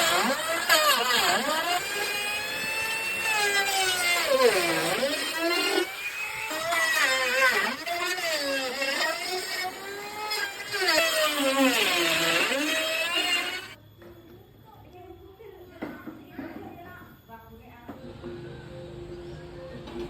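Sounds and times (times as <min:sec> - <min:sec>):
power tool motor whining: 0:00.0 - 0:13.8.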